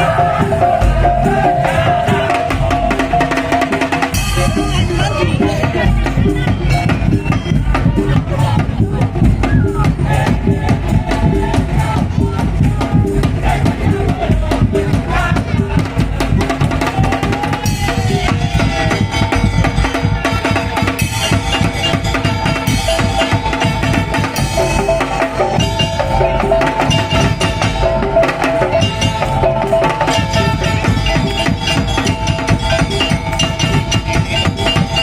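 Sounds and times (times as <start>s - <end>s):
drums beating fast: 0.0s - 35.0s
melody line: 21.0s - 35.0s.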